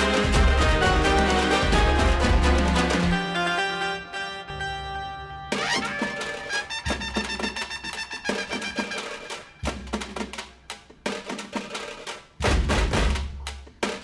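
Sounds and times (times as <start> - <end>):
upbeat instrumental music: 0.0 - 10.4.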